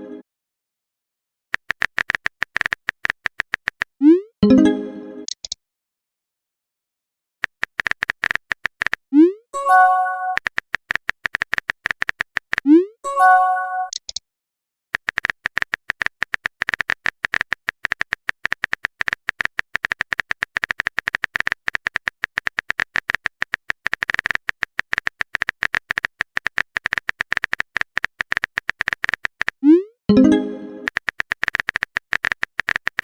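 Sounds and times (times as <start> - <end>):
smartphone keyboard typing clicks: 1.6 - 4.0, 5.3 - 5.6, 7.4 - 9.1, 10.2 - 12.7, 13.9 - 14.2, 15.0 - 29.6, 30.8 - 33.0.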